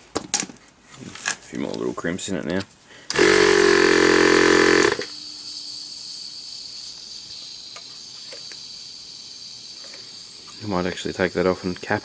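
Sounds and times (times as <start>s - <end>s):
air compressor running: 3.1s - 6.2s.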